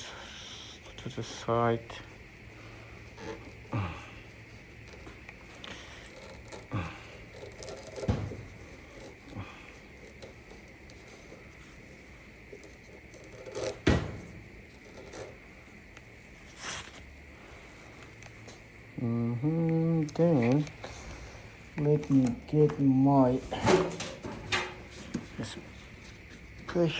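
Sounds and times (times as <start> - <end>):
knocks and scrapes of tools: 7.3 - 9.3, 23.5 - 26.7.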